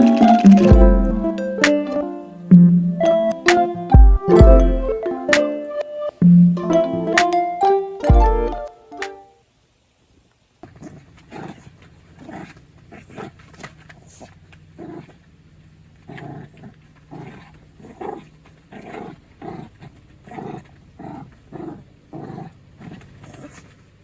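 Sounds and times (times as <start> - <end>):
dog growling: 10.6 - 24.0.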